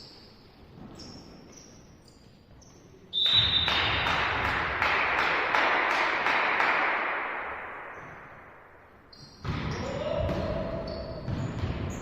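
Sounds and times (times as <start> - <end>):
high whistle: 3.1 - 4.1
crowd clapping and cheering: 3.7 - 7.5.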